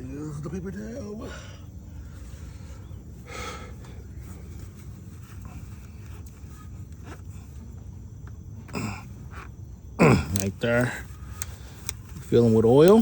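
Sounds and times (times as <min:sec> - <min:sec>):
taps and clicks of handling: 0:11.3 - 0:13.0.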